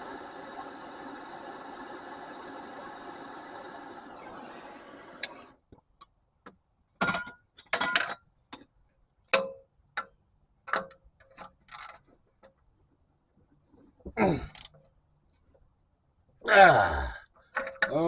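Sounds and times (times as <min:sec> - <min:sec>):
steady hiss: 0:00.0 - 0:05.6.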